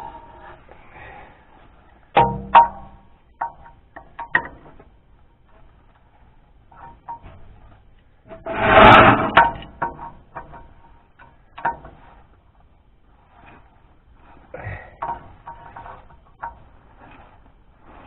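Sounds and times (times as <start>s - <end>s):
loud rushing scraping noise: 8.3s - 9.6s.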